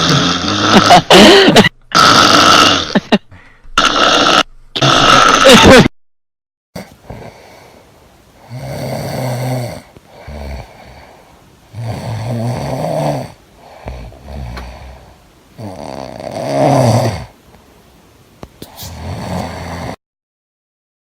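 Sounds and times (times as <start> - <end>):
person snoring: 0.0 - 3.2, 3.8 - 5.9, 6.8 - 7.8, 8.4 - 17.4, 18.6 - 20.0
soft breaths: 6.8 - 12.4, 13.0 - 15.9, 16.8 - 20.0.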